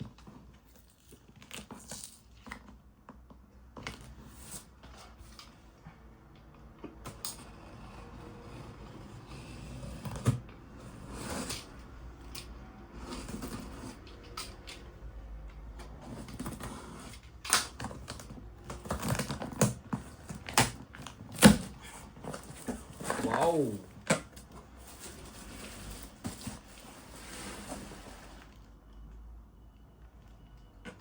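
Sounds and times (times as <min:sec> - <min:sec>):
cardboard box being handled: 0:17.9 - 0:28.7.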